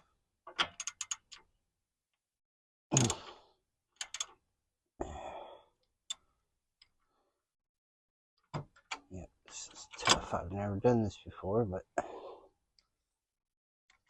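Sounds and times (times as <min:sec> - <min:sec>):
man sighing and grunting: 0:02.9 - 0:03.4, 0:05.0 - 0:05.7, 0:11.9 - 0:12.5.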